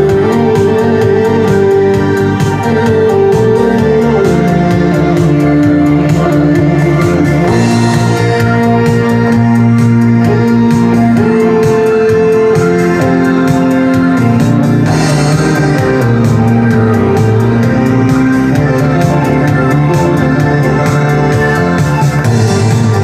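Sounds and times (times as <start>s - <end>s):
held chords over steady beat: 0.0s - 23.0s.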